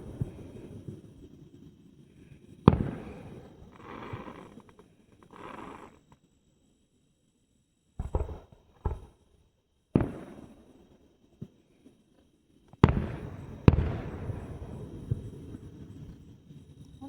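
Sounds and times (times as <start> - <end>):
fireworks exploding: 0.0 - 1.6, 2.2 - 6.1, 8.0 - 9.2, 10.0 - 11.9, 12.7 - 16.6.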